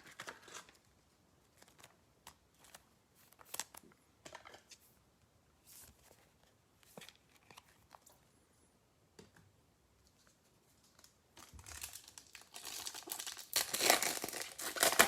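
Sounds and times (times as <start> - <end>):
trading cards crinkling and clicking: 1.5 - 4.8.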